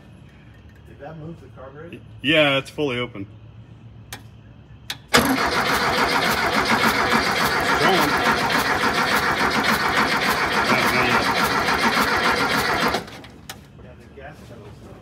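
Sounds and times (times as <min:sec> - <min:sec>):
engine cranking by starter motor: 0:05.0 - 0:13.5.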